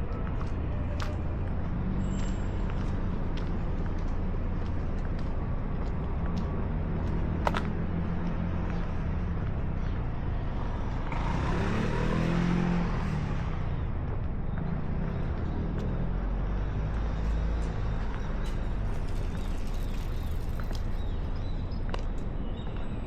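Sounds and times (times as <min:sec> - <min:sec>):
vehicle passing close by: 0:11.0 - 0:13.7.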